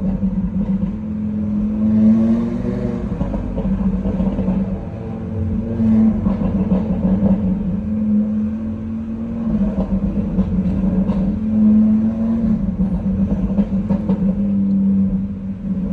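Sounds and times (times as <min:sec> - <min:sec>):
car engine running: 0:00.0 - 0:15.9
exhaust crackles and pops: 0:09.5 - 0:11.5.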